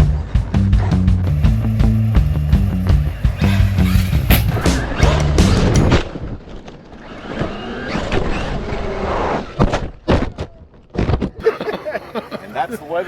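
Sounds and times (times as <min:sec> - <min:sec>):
electric toy truck running: 0:01.2 - 0:05.3, 0:06.7 - 0:09.5.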